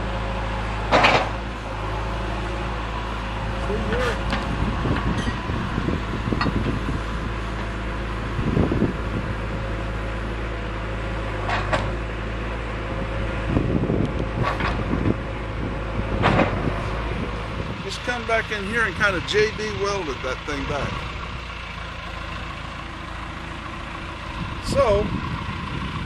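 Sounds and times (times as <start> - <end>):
low mechanical hum: 0.0 - 19.2.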